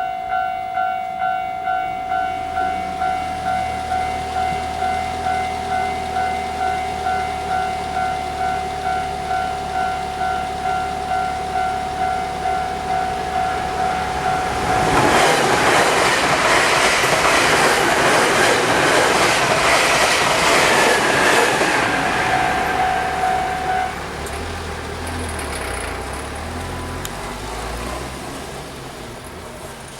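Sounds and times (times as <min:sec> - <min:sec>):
level crossing bell dinging: 0:00.0 - 0:14.9, 0:22.2 - 0:24.0
train wheels clattering: 0:02.6 - 0:26.4.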